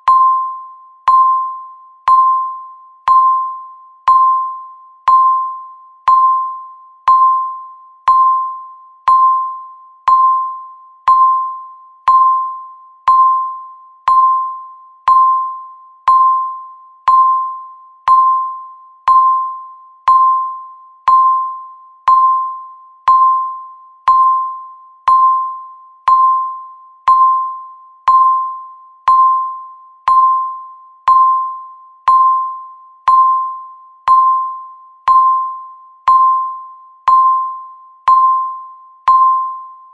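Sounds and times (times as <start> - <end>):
electronic timer beeps: 0.0 - 39.9.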